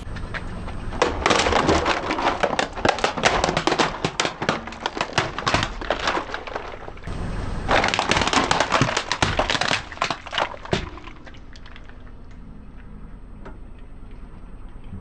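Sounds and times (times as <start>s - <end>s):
low steady hum: 0.0s - 15.0s
crunchy object crushed under tyre: 0.3s - 12.2s.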